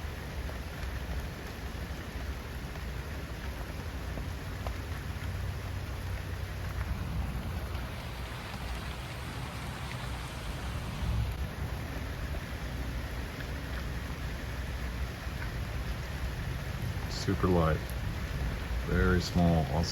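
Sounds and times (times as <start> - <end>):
light rain hissing: 0.0 - 19.9
raindrop ticks: 0.0 - 19.9
low rumble: 6.2 - 12.6.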